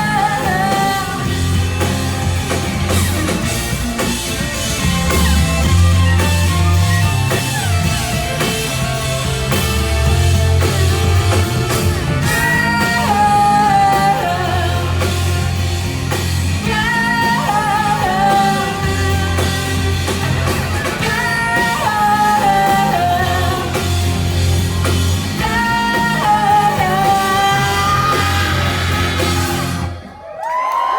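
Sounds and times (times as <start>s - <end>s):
sung vocals: 0.0s - 3.2s, 10.0s - 30.0s
live punk band playing: 0.0s - 30.3s.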